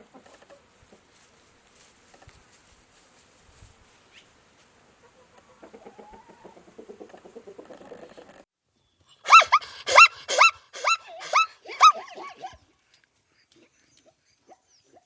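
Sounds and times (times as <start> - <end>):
animal high-pitched calls: 9.2 - 12.6.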